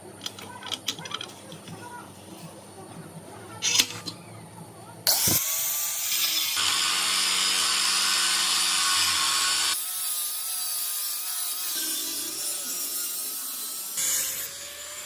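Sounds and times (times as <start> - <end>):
power tool cutting with harsh hiss: 5.1 - 15.0.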